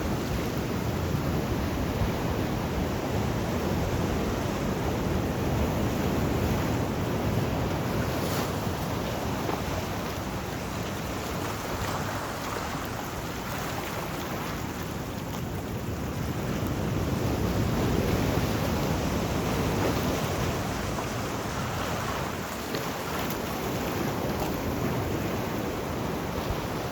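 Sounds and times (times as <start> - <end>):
sea waves washing ashore: 0.0 - 26.9.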